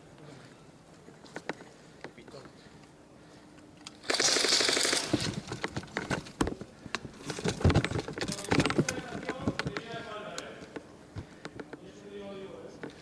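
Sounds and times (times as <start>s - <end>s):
airsoft rifle full-auto burst: 4.0s - 5.5s
sharp clicks and knocks: 5.2s - 9.9s.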